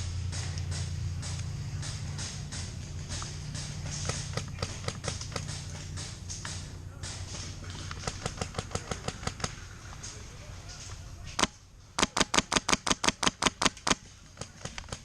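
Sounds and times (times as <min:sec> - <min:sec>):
airsoft gun shots: 0:11.4 - 0:15.0.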